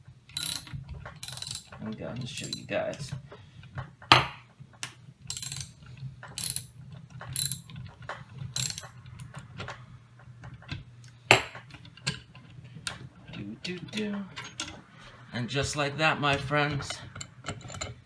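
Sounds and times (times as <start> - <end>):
ratchet clicking: 0.4 - 1.7, 5.3 - 5.7, 6.4 - 6.7, 7.4 - 7.7, 8.6 - 8.9
sharp knocks: 4.1 - 4.4.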